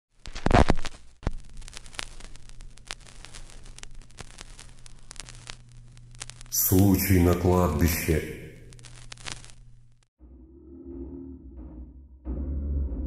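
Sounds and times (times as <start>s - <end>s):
crackling clicks: 0.1s - 10.1s
faint hiss: 1.3s - 9.9s.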